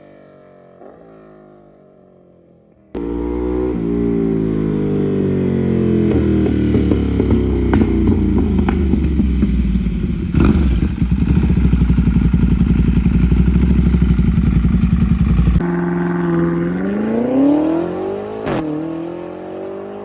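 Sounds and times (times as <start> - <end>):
engine revving: 5.6 - 20.0
motorcycle engine pulsing: 6.1 - 17.8.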